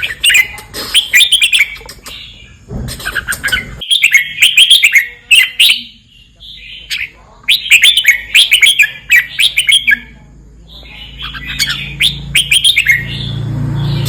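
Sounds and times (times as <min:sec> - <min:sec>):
bird singing whistled notes: 0:03.6 - 0:10.1, 0:10.7 - 0:14.0.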